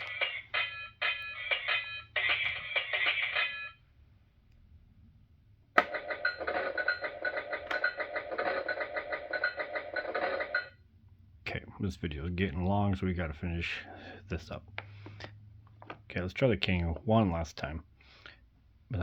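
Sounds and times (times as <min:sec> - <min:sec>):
toy sound effects through tinny speaker: 0:00.0 - 0:03.8.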